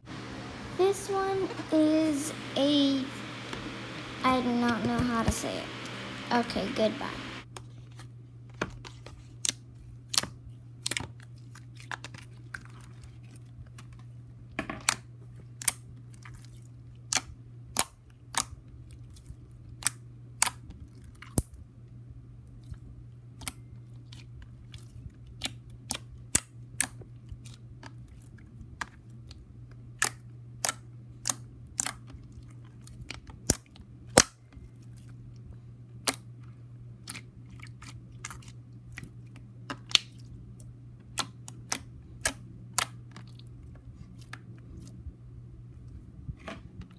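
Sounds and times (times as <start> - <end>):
steady low hum: 0.0 - 7.4.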